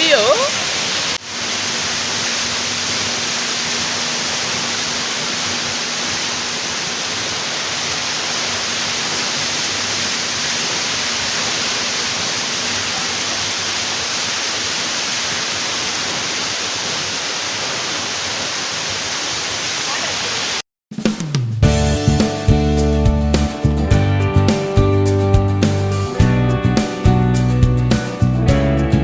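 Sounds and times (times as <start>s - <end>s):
rush of falling water: 0.0s - 20.6s.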